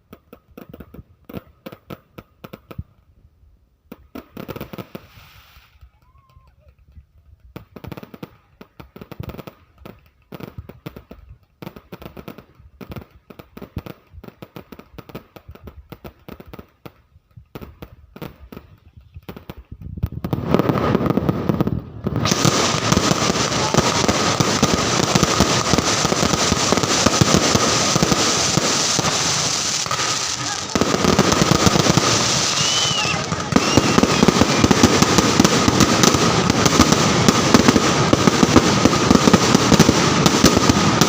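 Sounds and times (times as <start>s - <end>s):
fireworks bangs and pops: 0.0s - 3.2s, 3.8s - 41.0s.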